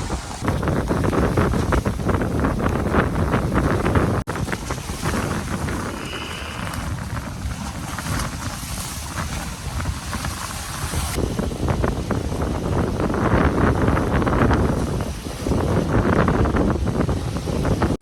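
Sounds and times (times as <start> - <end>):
strong gusty wind buffeting microphone: 0.0 - 18.0.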